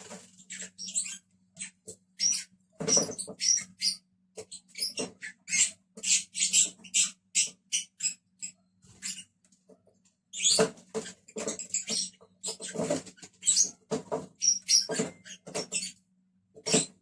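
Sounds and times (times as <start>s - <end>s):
lovebirds chirping: 0.0s - 9.6s, 10.2s - 17.0s.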